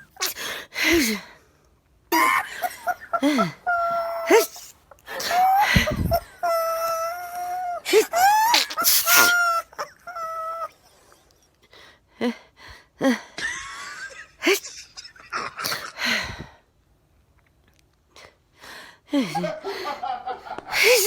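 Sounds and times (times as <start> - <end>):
woman sniffing and gasping: 0.0 - 1.4, 4.2 - 6.3, 7.8 - 9.5, 20.7 - 21.0.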